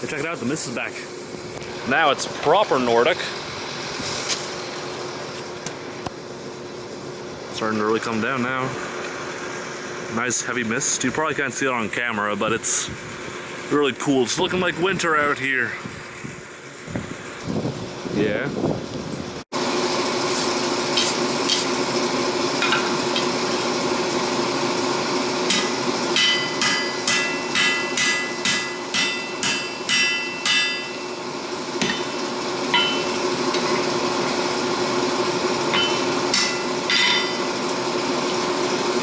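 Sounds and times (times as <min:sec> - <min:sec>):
steady hum: 0:20.3 - 0:39.0
hammer striking metal on anvil: 0:25.5 - 0:33.8, 0:35.7 - 0:37.5.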